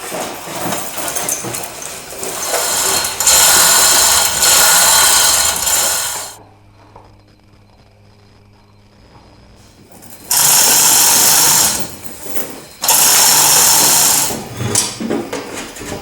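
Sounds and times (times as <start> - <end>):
power tool running: 0.7 - 6.4, 10.0 - 14.9
faint low hum: 6.4 - 10.3.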